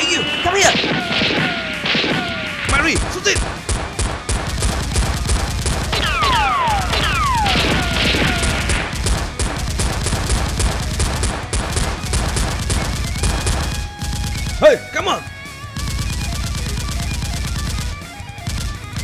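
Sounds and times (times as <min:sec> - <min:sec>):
falling whistles: 0:00.0 - 0:04.0, 0:06.0 - 0:09.0
automatic gunfire: 0:00.0 - 0:14.6.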